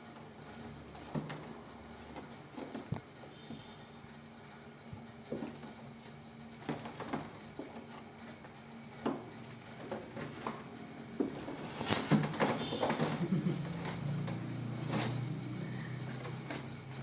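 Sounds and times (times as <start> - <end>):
kittens knocking and scuffling: 5.0 - 17.0.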